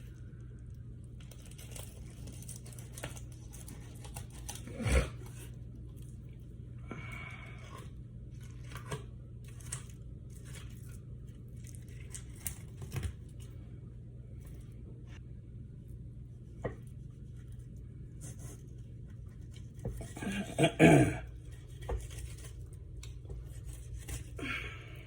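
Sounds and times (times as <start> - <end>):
low hum: 0.0 - 25.0
knife cutting and scraping fish: 1.2 - 6.2, 7.1 - 13.5, 16.4 - 20.7, 21.3 - 25.0.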